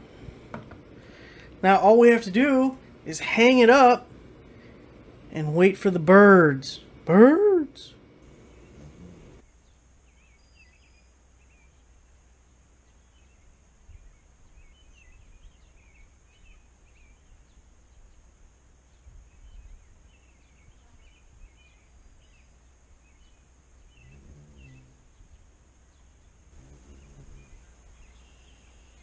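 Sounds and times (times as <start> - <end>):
small birds chirping: 19.4 - 29.0.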